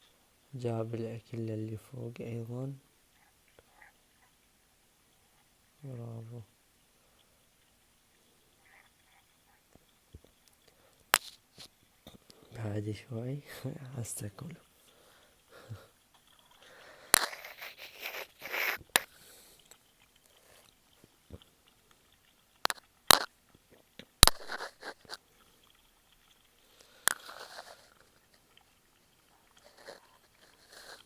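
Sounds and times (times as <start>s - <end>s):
puppies chewing and crunching food: 14.4s - 31.0s.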